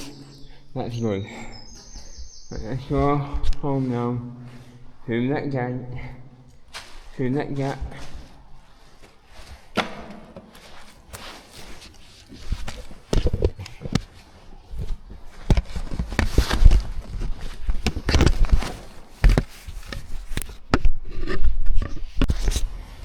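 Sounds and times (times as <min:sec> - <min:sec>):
footsteps: 0:06.0 - 0:20.9
knocks and scrapes: 0:06.5 - 0:23.0
camera handling noise: 0:11.0 - 0:16.8.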